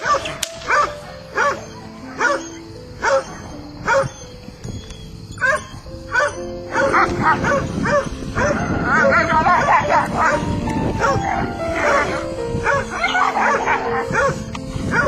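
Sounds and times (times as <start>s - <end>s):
background music with held notes: 0.0s - 15.0s.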